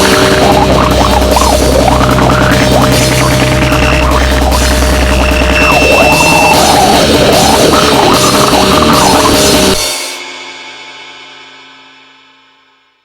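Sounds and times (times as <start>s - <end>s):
loud goregrind music: 0.0s - 9.9s.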